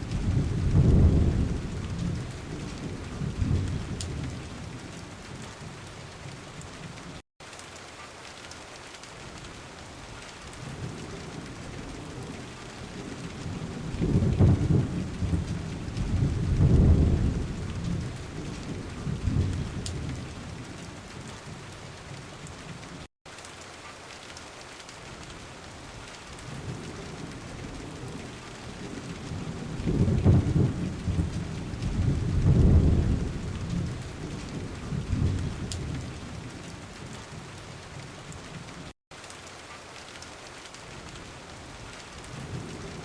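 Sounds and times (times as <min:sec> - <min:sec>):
thunder rumbling: 0:00.0 - 0:05.8, 0:10.6 - 0:21.7, 0:26.5 - 0:38.8
heavy rain falling: 0:00.0 - 0:43.0.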